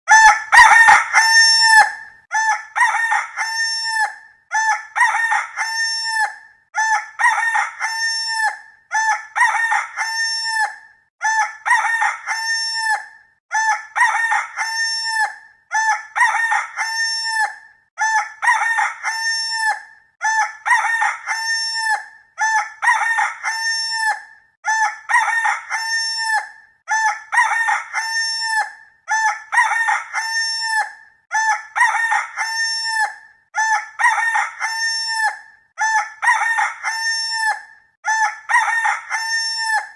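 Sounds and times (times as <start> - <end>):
rooster crowing: 0.1 - 3.8.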